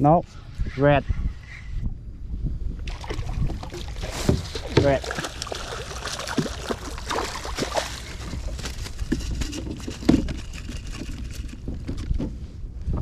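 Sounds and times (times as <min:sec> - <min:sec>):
water sloshing against boat hull: 0:02.8 - 0:12.3.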